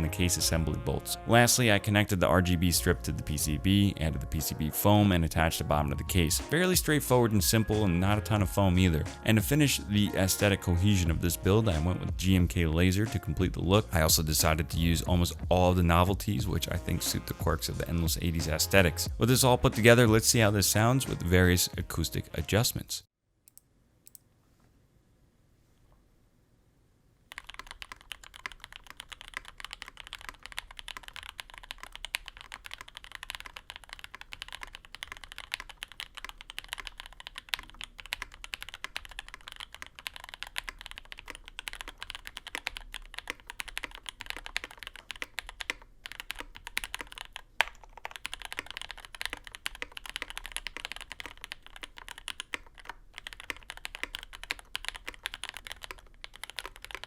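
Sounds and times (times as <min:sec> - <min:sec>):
fast mechanical keyboard typing: 0:27.3 - 0:57.0.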